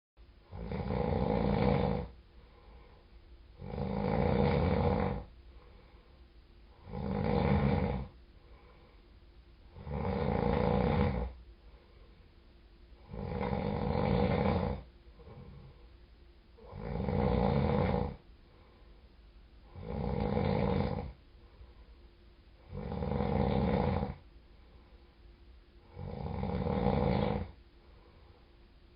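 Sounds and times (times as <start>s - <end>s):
person snoring: 0.5s - 3.0s, 3.6s - 5.3s, 6.8s - 8.8s, 9.7s - 11.4s, 13.0s - 15.8s, 16.6s - 18.2s, 19.6s - 21.2s, 22.6s - 24.2s, 25.8s - 27.6s.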